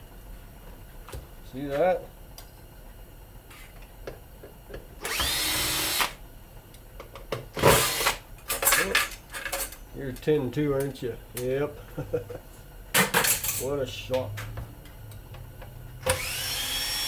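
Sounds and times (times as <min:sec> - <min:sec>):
cordless drill whining: 0:05.0 - 0:06.2, 0:07.7 - 0:08.2, 0:16.0 - 0:17.0.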